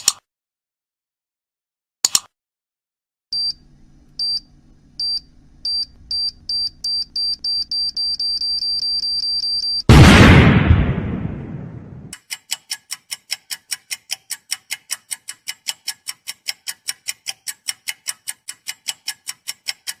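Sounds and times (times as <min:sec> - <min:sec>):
loud blast: 0:09.9 - 0:12.1.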